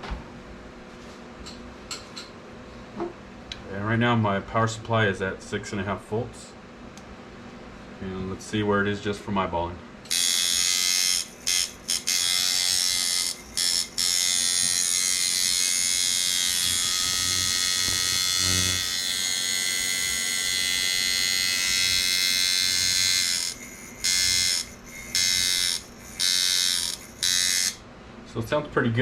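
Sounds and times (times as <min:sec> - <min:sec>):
tattoo machine buzzing: 0:10.1 - 0:27.8.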